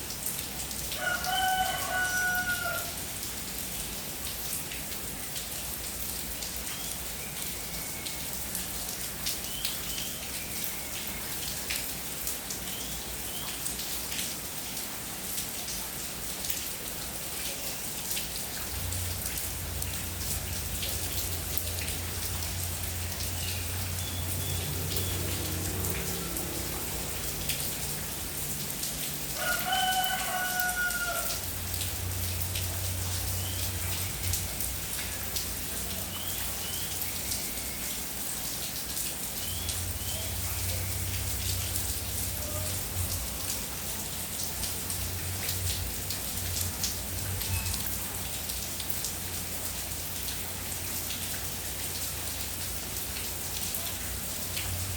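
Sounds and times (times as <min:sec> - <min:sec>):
steady rain falling: 0:00.0 - 0:54.9
rooster crowing: 0:01.0 - 0:03.0, 0:29.4 - 0:31.5.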